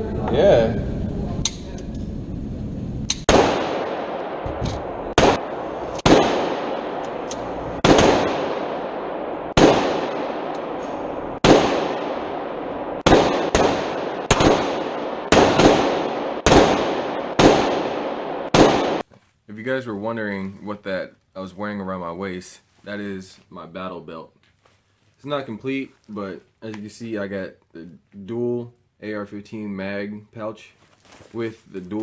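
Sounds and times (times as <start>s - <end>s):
gunshots with echo: 3.2s - 19.0s.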